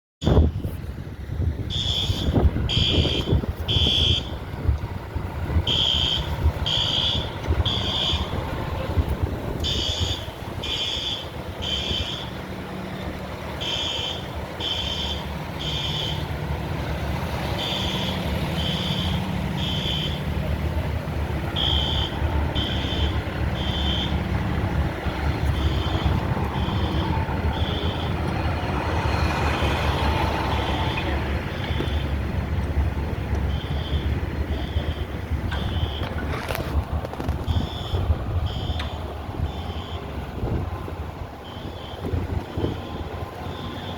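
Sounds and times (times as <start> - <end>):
truck engine idling: 0.2 - 43.9
fire alarm beeps: 1.7 - 4.3, 5.7 - 8.4, 9.6 - 12.3, 13.6 - 16.2, 21.6 - 24.2, 33.5 - 36.2, 37.4 - 40.0, 41.4 - 43.9.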